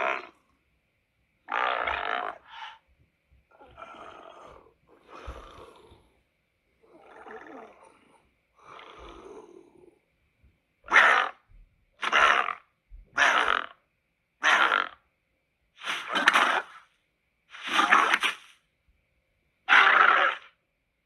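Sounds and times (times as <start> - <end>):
cartoon monster calls: 13.2 - 13.7, 14.4 - 15.0, 19.7 - 20.5.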